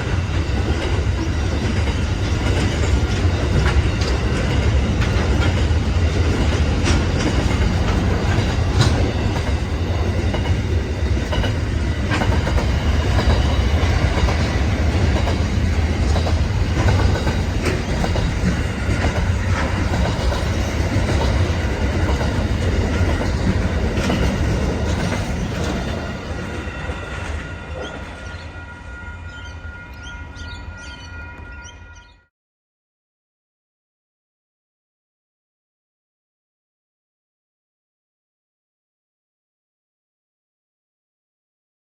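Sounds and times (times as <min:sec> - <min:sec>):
wheels clacking over rail joints: 0:00.0 - 0:28.3
freight train rumble: 0:00.0 - 0:32.3.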